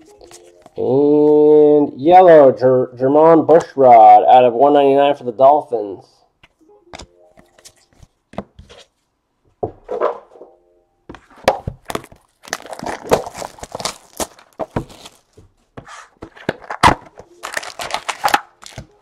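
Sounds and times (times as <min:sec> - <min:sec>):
plastic wrapper crinkling and tearing: 0:11.8 - 0:15.5, 0:16.4 - 0:19.0.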